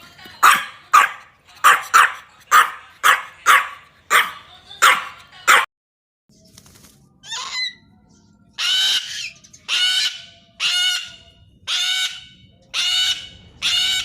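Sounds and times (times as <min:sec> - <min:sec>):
cockatoo screeching: 0:07.2 - 0:07.8, 0:08.6 - 0:14.0.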